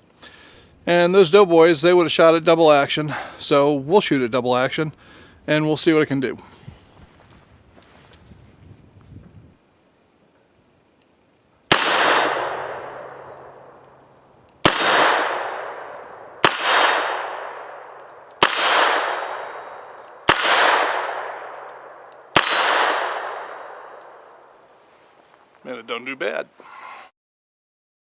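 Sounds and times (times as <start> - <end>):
revolver gunshots echoing: 11.7 - 24.7.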